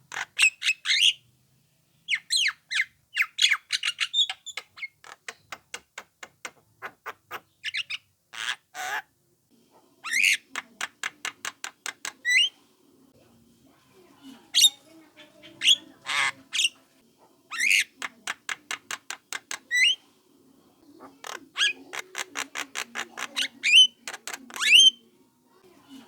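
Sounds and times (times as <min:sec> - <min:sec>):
myna calling: 0:14.5 - 0:20.0, 0:20.8 - 0:25.0.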